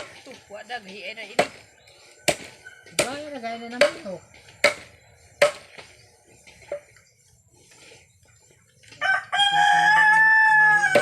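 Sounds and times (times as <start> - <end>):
rooster crowing: 9.0 - 11.0.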